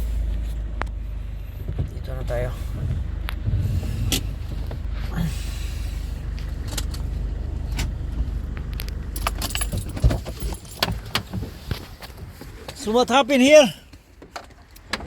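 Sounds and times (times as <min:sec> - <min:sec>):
engine idling: 0:00.0 - 0:15.0
jingling keys: 0:09.0 - 0:11.2.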